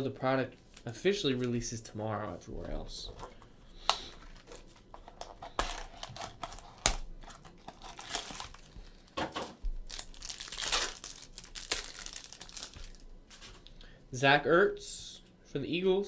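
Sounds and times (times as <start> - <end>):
card pack wrapper tearing and crinkling: 3.8 - 13.7.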